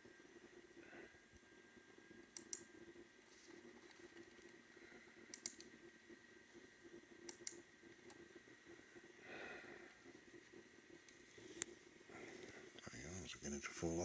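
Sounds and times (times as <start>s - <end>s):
low steady hum: 0.0s - 14.0s.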